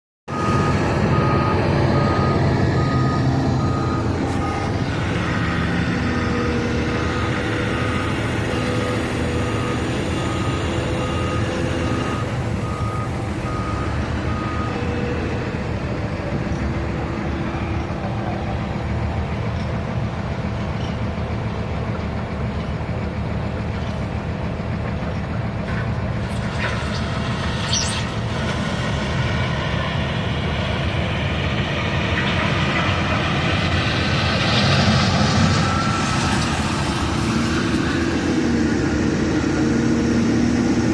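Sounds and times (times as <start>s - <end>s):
reversing alarm beeping: 0.3s - 15.8s, 34.4s - 38.0s
diesel engine running: 0.3s - 40.9s.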